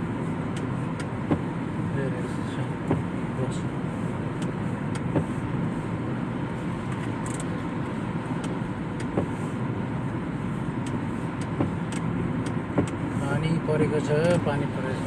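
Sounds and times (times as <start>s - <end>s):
car road and engine rumble: 0.0s - 15.0s
light taps: 10.8s - 13.0s.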